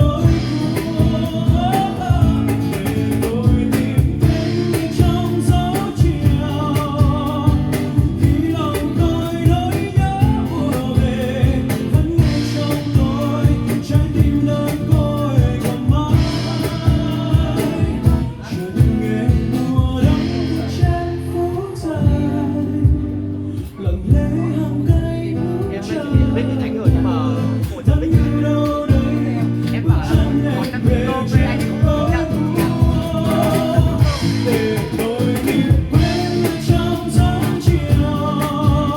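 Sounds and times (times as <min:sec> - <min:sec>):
man singing: 0:00.0 - 0:38.9
strummed guitar: 0:00.0 - 0:38.9.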